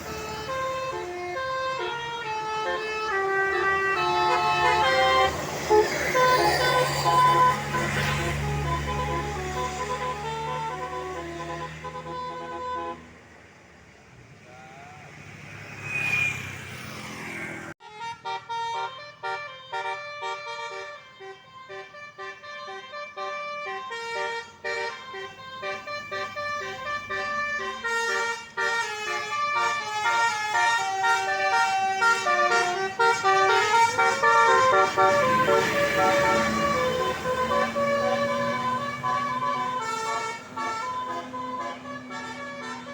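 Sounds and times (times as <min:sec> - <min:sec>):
multi-tone musical air horn: 0:00.0 - 0:13.1, 0:17.8 - 0:42.9
vehicle noise: 0:00.0 - 0:42.9.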